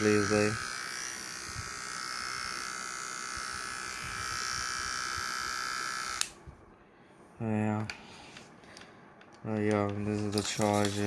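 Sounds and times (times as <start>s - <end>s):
electric hair trimmer buzzing: 0.0s - 6.4s.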